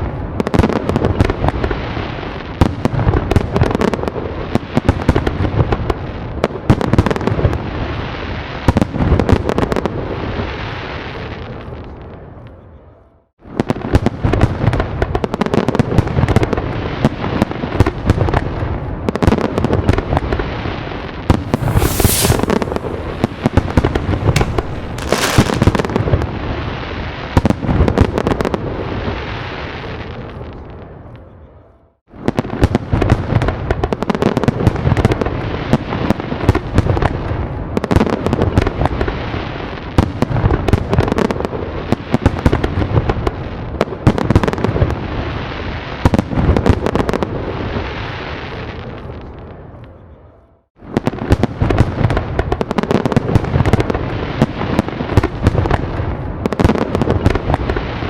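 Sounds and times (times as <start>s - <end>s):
fireworks booming and crackling: 0.0s - 11.8s, 13.4s - 30.6s, 50.8s - 58.0s.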